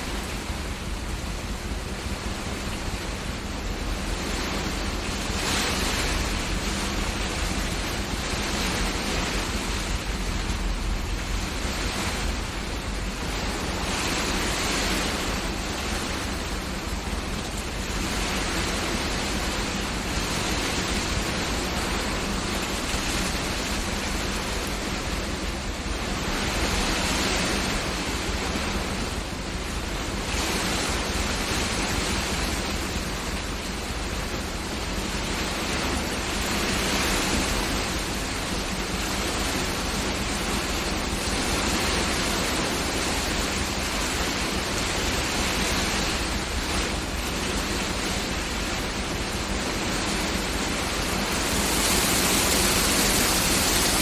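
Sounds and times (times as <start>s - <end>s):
heavy rain with hail: 0.0s - 54.0s.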